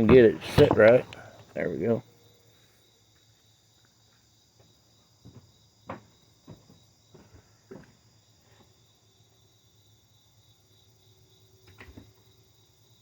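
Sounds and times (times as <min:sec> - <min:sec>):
faint knocks: 0:00.0 - 0:01.6
crickets chirping: 0:00.0 - 0:13.0.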